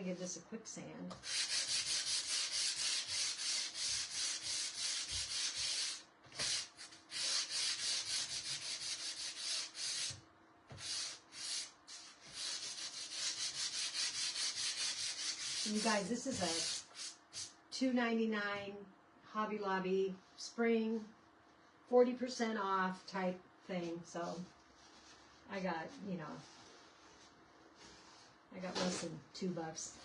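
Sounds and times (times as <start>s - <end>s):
sandpaper scraping strokes: 1.2s - 10.2s, 10.8s - 17.5s.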